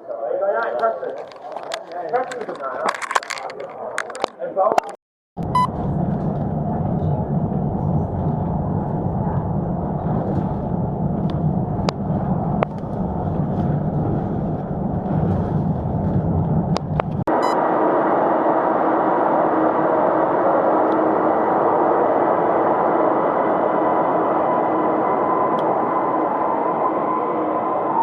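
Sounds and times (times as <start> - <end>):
train rumble inside carriage: 5.4 - 17.5, 18.4 - 28.0.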